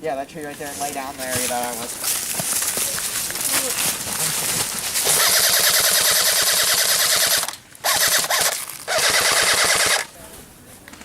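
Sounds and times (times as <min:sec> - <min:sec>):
airsoft gun firing full auto: 0:05.0 - 0:10.1.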